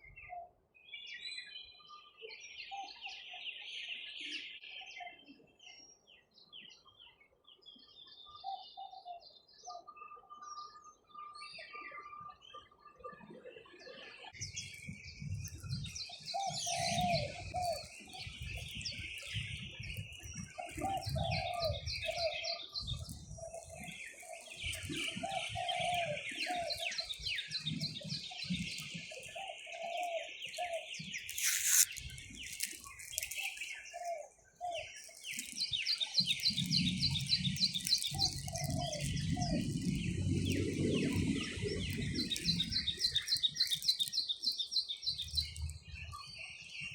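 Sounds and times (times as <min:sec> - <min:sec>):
birds trilling and chirping: 0:14.4 - 0:46.9.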